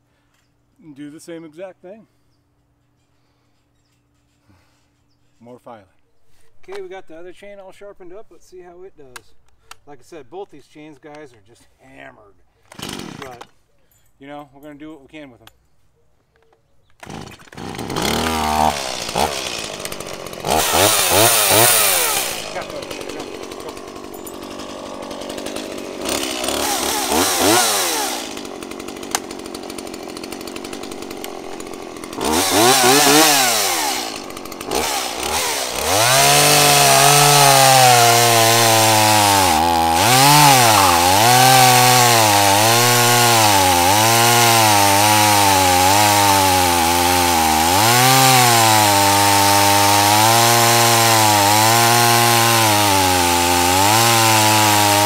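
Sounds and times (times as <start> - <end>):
chainsaw revving and cutting wood: 12.7 - 13.5, 17.0 - 55.0.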